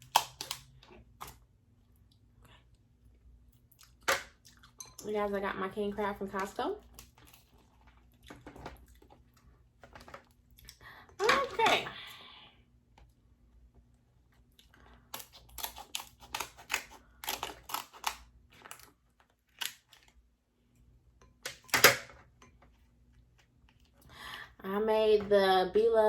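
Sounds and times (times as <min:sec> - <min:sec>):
crab shell cracking: 0:00.0 - 0:01.4, 0:14.7 - 0:20.2.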